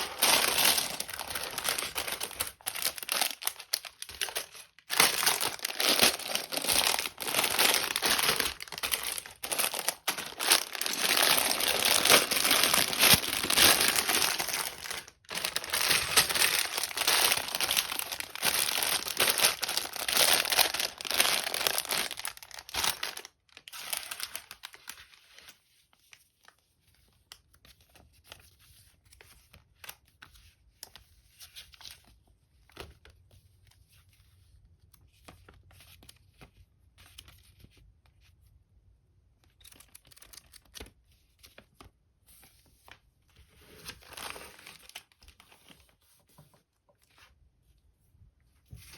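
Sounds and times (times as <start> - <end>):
packaging crinkling and tearing: 0.0 - 25.5, 43.6 - 45.8.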